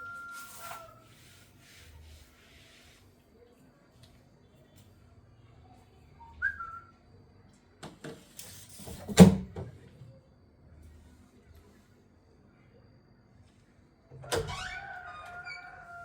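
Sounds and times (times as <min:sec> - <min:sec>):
whistle-like tone: 0:00.0 - 0:01.0, 0:06.2 - 0:07.0.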